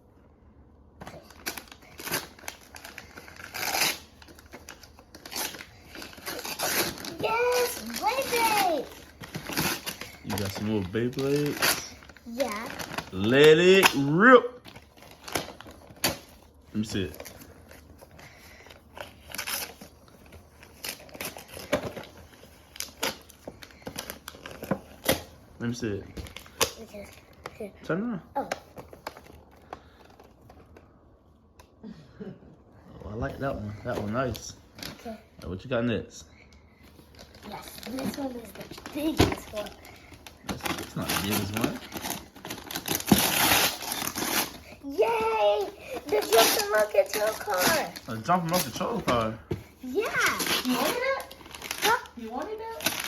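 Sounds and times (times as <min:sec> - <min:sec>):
packaging crinkling: 0:01.1 - 0:25.3, 0:37.0 - 0:53.0
wrapping paper tearing and crumpling: 0:01.1 - 0:27.6, 0:37.0 - 0:53.0.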